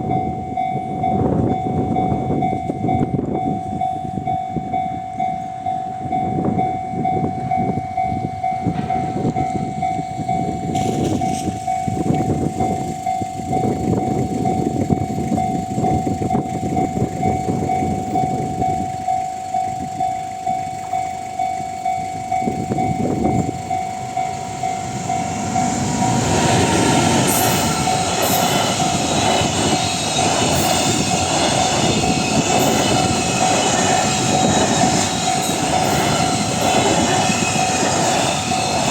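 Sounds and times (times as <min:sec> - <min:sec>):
level crossing alarm: 0:00.0 - 0:38.9
train wheels clattering: 0:08.7 - 0:18.3, 0:22.3 - 0:38.9.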